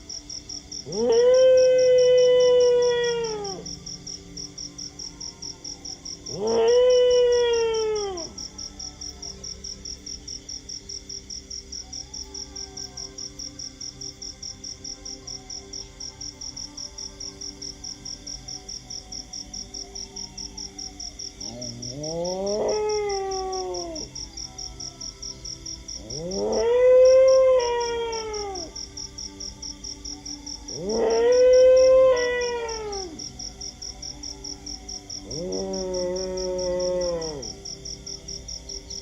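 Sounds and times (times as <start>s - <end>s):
crickets chirping: 0.0s - 39.0s
dog howling: 0.8s - 3.8s, 6.3s - 9.0s, 21.0s - 24.2s, 26.0s - 28.9s, 30.7s - 33.4s, 35.0s - 37.6s.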